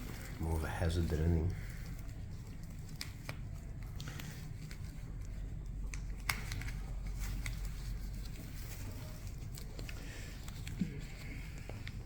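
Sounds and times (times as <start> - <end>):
faint clicks and handling noises: 0.0 - 12.0
low room hum: 0.0 - 12.0.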